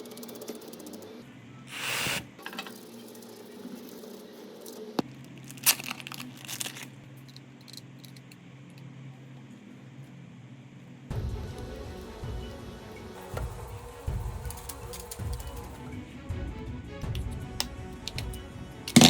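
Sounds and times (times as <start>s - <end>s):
rustle or tear: 5.3s - 7.0s.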